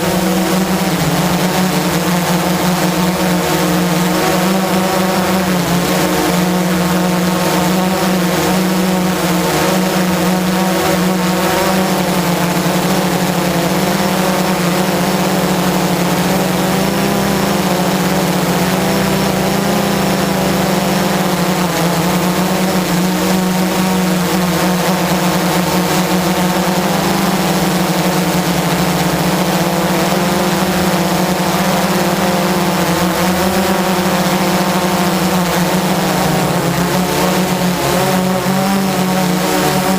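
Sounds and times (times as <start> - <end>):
drone motors whirring: 0.0 - 39.9.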